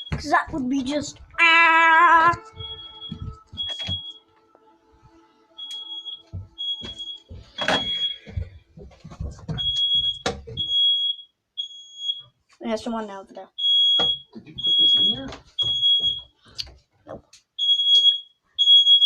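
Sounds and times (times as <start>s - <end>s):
smoke alarm beeps: 0.0s - 0.2s, 2.5s - 4.3s, 5.6s - 8.5s, 9.5s - 12.4s, 13.6s - 16.3s, 17.6s - 19.0s.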